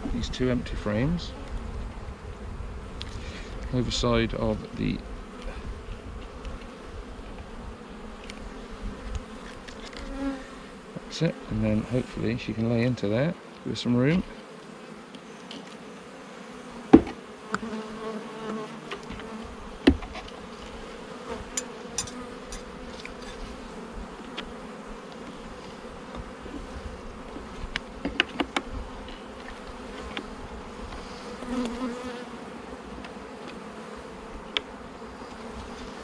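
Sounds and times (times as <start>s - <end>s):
bees buzzing: 0.0s - 36.0s
knocks and clicks of hive frames: 16.9s - 17.8s, 18.4s - 23.4s, 26.1s - 30.3s.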